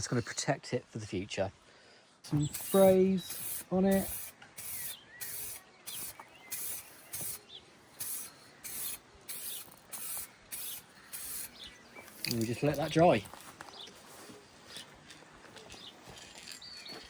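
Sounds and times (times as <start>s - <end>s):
aerosol can spraying bursts: 2.3s - 7.4s, 8.0s - 12.4s.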